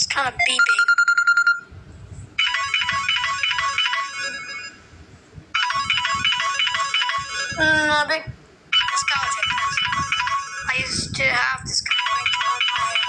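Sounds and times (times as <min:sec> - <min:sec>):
electronic phone ringtone: 0:00.4 - 0:01.7, 0:02.4 - 0:04.8, 0:05.5 - 0:07.6, 0:08.7 - 0:10.9, 0:11.9 - 0:13.0.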